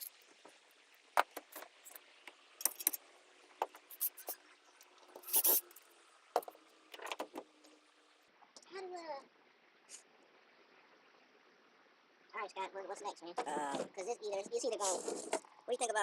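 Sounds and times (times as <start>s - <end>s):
hand tools and wiring clinking: 2.6s - 3.0s
scrape: 5.2s - 5.7s, 14.8s - 15.4s.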